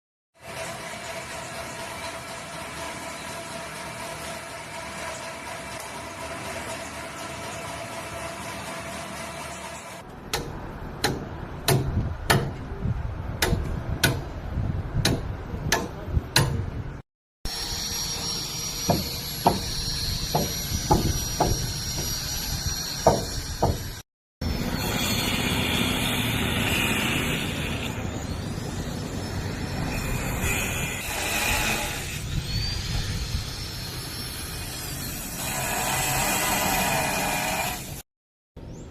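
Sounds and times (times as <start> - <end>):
steady machine noise: 0.4 - 10.1, 17.5 - 38.0
hammer knocks: 20.3 - 22.2, 23.0 - 23.9.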